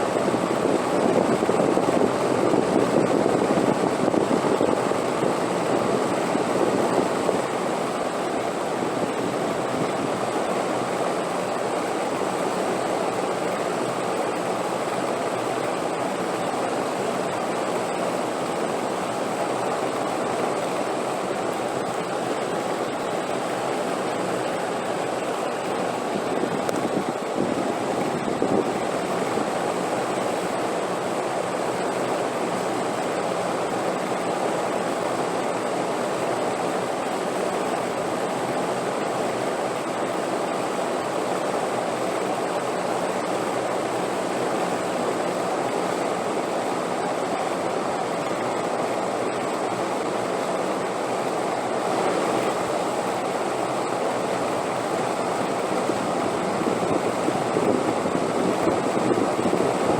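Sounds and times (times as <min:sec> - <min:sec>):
wind blowing: 0:22.8 - 0:30.0, 0:55.0 - 0:59.9.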